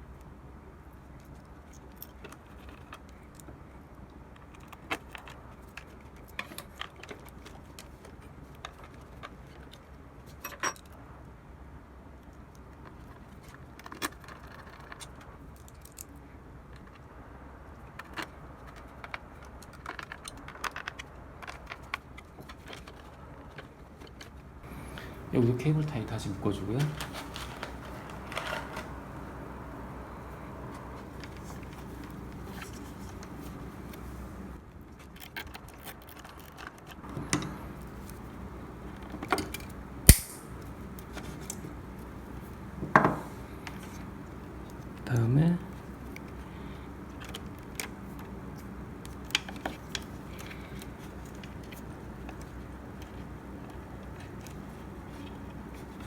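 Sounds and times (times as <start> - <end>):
cable tie being tightened: 26.0 - 34.6, 37.2 - 42.8
small parts clicking and tapping: 37.1 - 45.1
sharp snap: 40.1 - 40.7.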